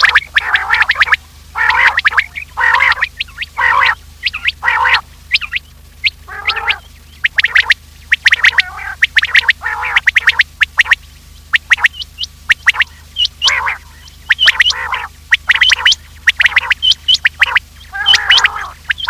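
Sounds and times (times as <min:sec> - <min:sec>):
quail calling: 0:00.0 - 0:19.0
sharp high chirps: 0:05.3 - 0:19.0.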